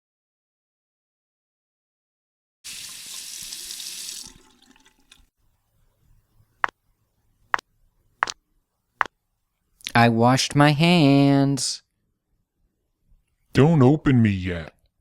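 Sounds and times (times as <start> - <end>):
water running from a tap: 2.7 - 5.3.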